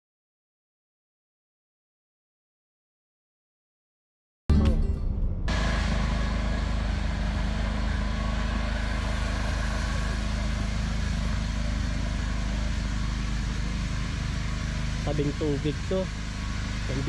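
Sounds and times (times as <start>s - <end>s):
vehicle engine and road noise: 4.7s - 17.0s.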